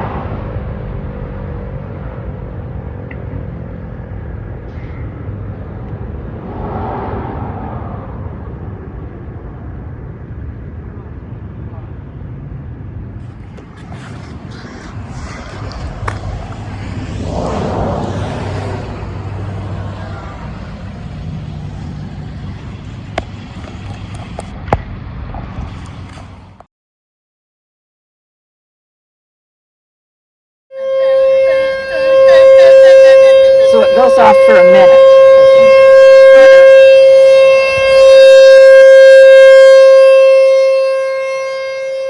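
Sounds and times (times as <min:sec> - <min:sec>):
engine hum: 0:00.0 - 0:26.7, 0:30.8 - 0:42.0
traffic noise: 0:00.0 - 0:26.7, 0:30.8 - 0:42.0
siren steady tone: 0:13.2 - 0:24.3, 0:30.7 - 0:42.0.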